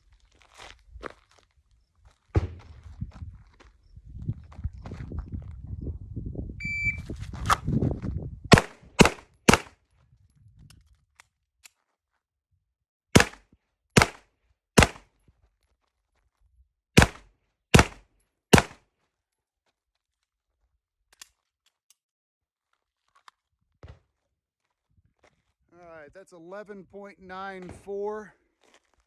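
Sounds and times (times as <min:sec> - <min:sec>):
shot timer beep: 0:06.6 - 0:07.0
handgun shots: 0:08.5 - 0:09.7, 0:13.2 - 0:15.1, 0:17.0 - 0:18.8
reload clicks: 0:13.2 - 0:13.4, 0:14.0 - 0:14.2, 0:14.8 - 0:15.0, 0:17.8 - 0:18.0.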